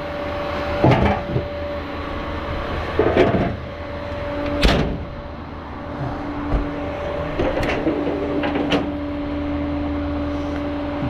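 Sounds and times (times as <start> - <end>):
vehicle engine idling: 0.0 - 11.0
clunks: 0.6 - 1.7, 2.6 - 5.3, 6.0 - 9.1.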